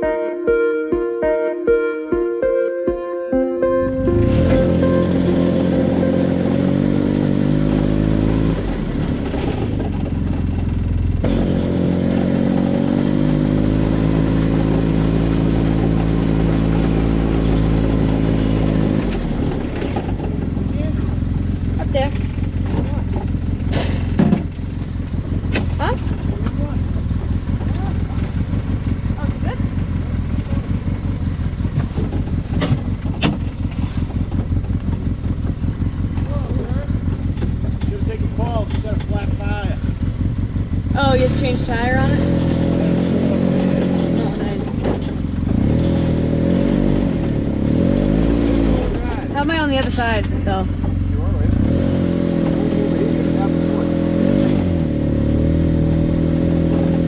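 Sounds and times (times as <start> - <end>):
off-road vehicle engine running: 3.9 - 57.0.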